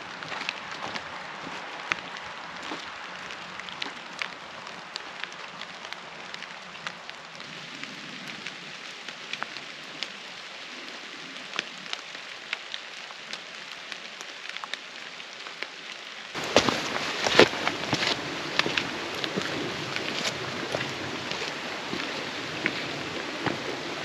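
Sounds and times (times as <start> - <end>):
raindrops ticking: 0.0 - 24.0
steady rain hiss: 0.0 - 24.0.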